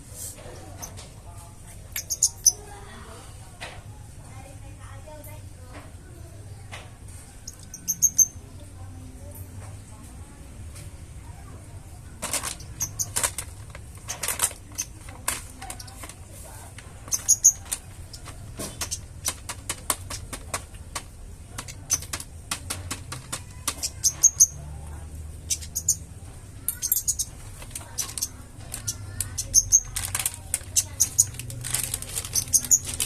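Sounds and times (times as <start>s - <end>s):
bird ticking calls: 2.0s - 2.6s, 12.5s - 13.4s, 17.0s - 21.0s, 21.6s - 24.7s, 25.4s - 33.0s
high bird chirps: 2.0s - 2.6s, 7.4s - 8.4s, 12.6s - 13.2s, 17.0s - 19.4s, 23.5s - 24.6s, 25.4s - 30.0s, 30.6s - 31.4s, 32.2s - 33.0s.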